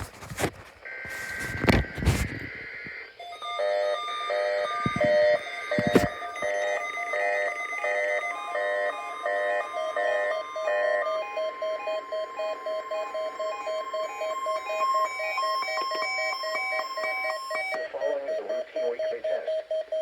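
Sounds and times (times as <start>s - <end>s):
receivers beeping: 0.0s - 20.0s
steady alarm tone: 0.0s - 20.0s
voice from radio: 17.8s - 19.6s.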